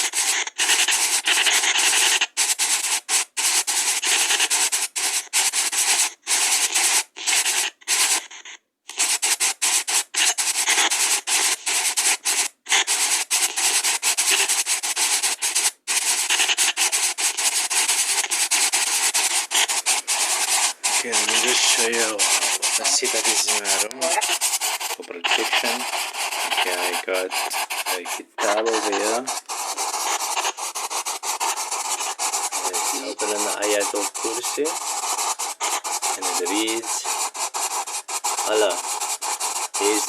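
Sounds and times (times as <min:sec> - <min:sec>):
white noise hissing: 0:15.2 - 0:40.0.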